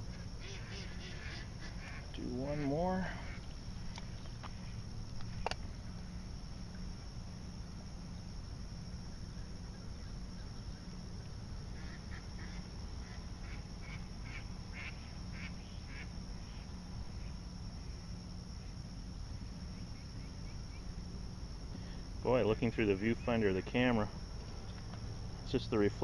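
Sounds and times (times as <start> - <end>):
low outdoor rumble: 0.0 - 26.0
ducks quacking: 0.1 - 3.5.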